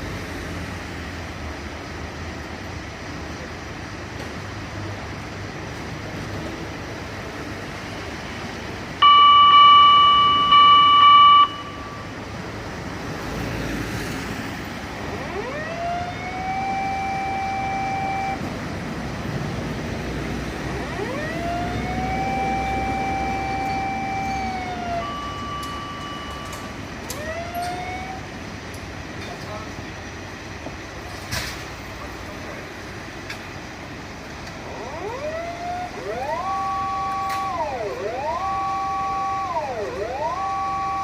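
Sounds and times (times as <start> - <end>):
traffic noise: 0.0 - 41.0
fire engine siren wailing: 9.0 - 12.2, 14.8 - 18.7, 20.3 - 28.4, 34.6 - 41.0.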